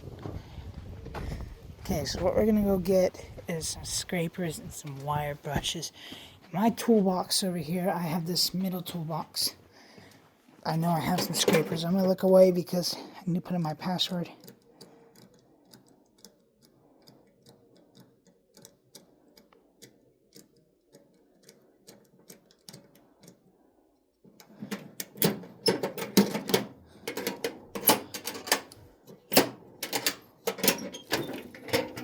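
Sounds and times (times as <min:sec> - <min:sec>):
metal tools clattering: 0:11.0 - 0:12.3, 0:25.1 - 0:32.0.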